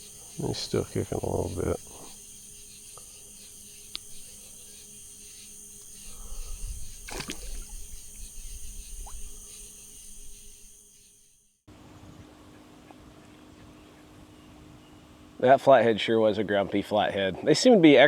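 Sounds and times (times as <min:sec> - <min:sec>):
faint insect drone: 0:00.0 - 0:18.0
water splashing and sloshing: 0:07.0 - 0:08.2.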